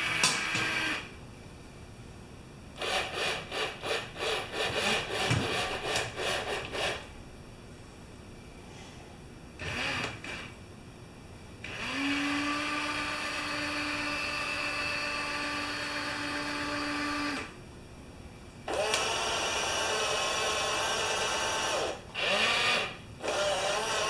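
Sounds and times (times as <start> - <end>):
small electric motor whining: 9.6 - 10.5, 11.7 - 17.5.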